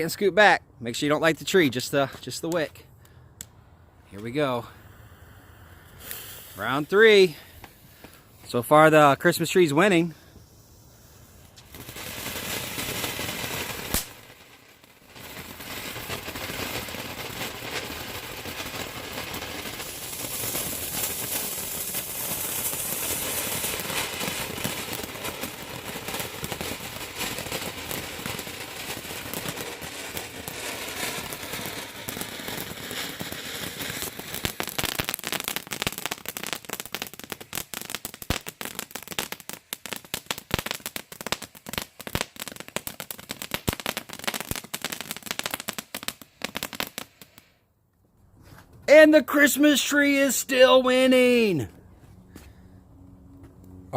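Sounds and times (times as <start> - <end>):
firework spraying hiss: 4.6 - 8.0, 10.0 - 47.5
rapid crackling pops: 11.4 - 47.4.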